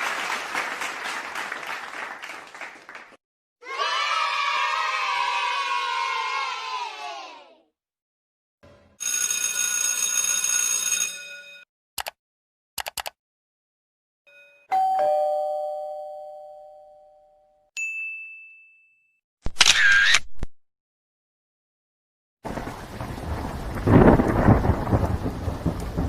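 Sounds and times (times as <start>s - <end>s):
quick clicks: 12.8s - 13.2s
two-note doorbell chime: 14.3s - 19.2s.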